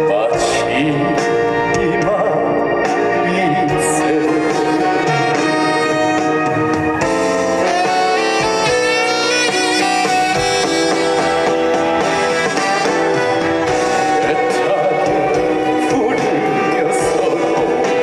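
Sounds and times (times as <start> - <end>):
live band music: 0.0 - 18.0
sustained saxophone or brass lead: 3.3 - 18.0.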